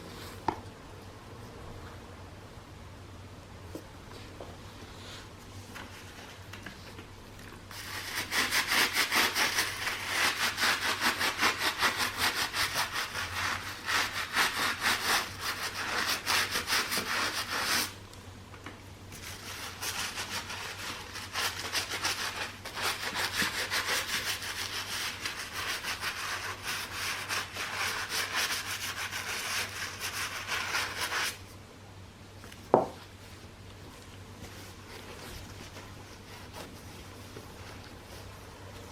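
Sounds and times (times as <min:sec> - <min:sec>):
rubbing strokes on a sneaker: 0:07.7 - 0:18.0, 0:19.2 - 0:31.4.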